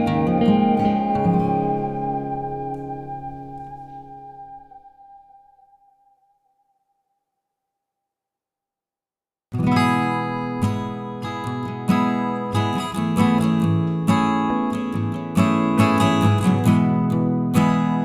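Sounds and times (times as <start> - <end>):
strummed acoustic guitar: 0.0 - 4.6, 9.6 - 18.0.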